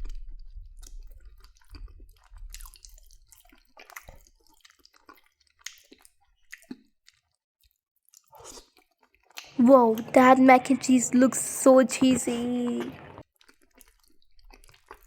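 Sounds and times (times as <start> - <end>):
person chewing food: 1.2 - 7.2, 12.9 - 15.0.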